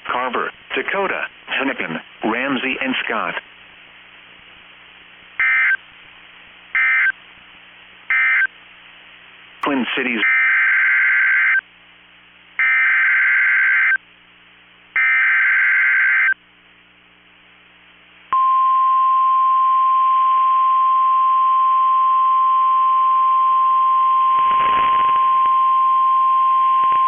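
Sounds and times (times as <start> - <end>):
steady warning alarm tone: 5.4 - 5.8, 6.8 - 7.2, 8.1 - 8.5, 12.6 - 14.0, 15.0 - 16.4
buzzing data bursts: 24.4 - 25.4.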